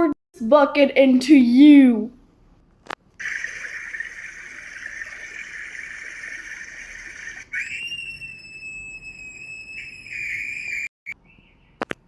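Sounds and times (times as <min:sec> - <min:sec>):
water pouring: 0:03.2 - 0:07.5
high drawn-out scream: 0:03.2 - 0:10.9.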